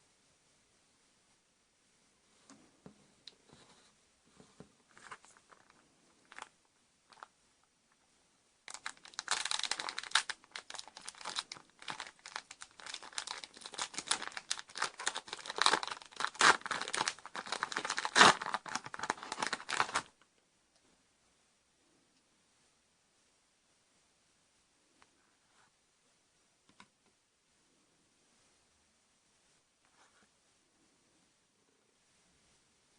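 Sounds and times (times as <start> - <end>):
wrapper crinkling and tearing: 5.0 - 6.5, 7.1 - 7.3, 8.7 - 20.2.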